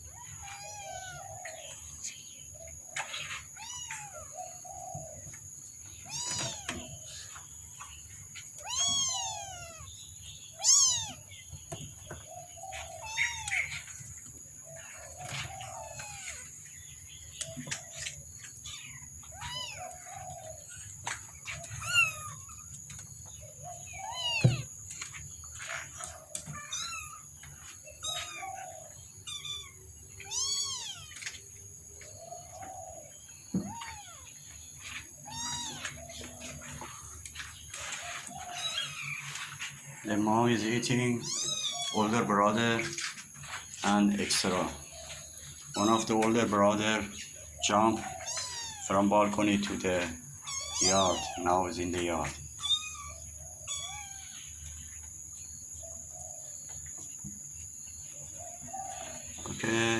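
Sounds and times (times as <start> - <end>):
kittens mewing: 0.0 - 1.6, 3.0 - 4.6, 6.0 - 7.4, 8.4 - 11.4, 12.8 - 14.1, 18.6 - 22.8, 23.7 - 31.4, 33.5 - 43.6, 47.6 - 54.8.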